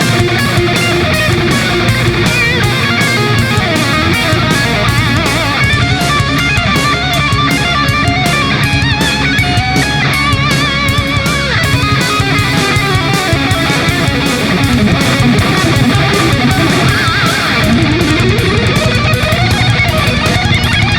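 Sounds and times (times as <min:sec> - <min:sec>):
heavy rock music: 0:00.0 - 0:20.9.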